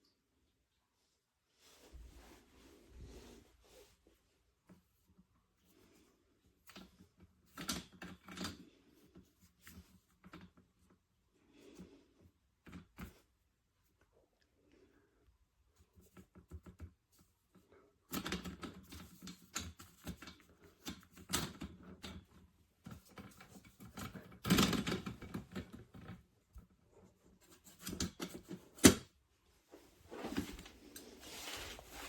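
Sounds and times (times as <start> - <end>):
rustling: 29.5 - 32.0.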